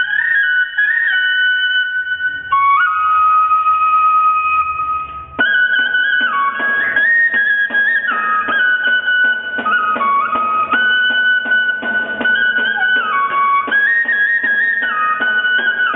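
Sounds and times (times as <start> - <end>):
flute melody: 0.0 - 15.9.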